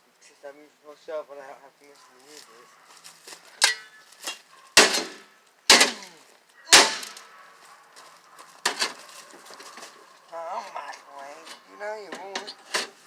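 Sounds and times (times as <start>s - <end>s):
shovel striking sheet metal: 3.6s - 3.9s, 4.8s - 6.1s, 6.7s - 7.3s.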